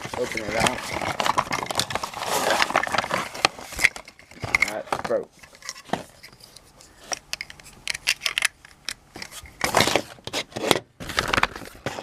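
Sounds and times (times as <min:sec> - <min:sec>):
rustling scrapes: 0:00.0 - 0:07.8.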